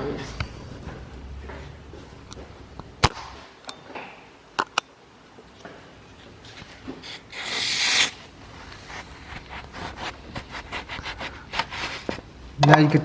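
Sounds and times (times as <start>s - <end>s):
short loud hiss: 7.0s - 8.3s.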